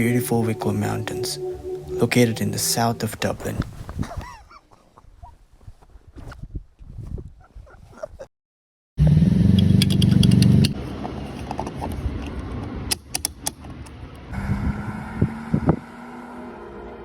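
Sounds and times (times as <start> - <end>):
car engine starting and running: 9.0 - 17.0
clicks and rattles: 9.6 - 10.8.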